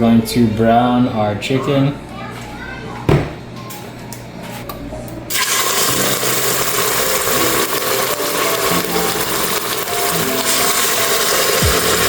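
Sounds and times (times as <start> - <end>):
chicken sizzling in hot oil: 5.3 - 12.0.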